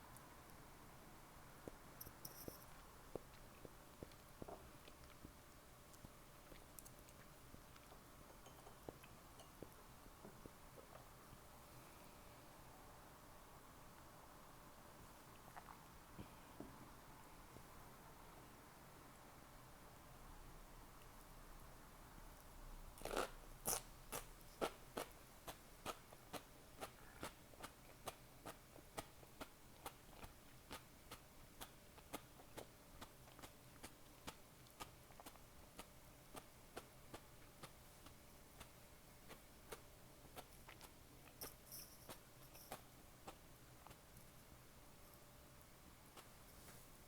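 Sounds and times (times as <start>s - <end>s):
person chewing: 31.6s - 38.2s.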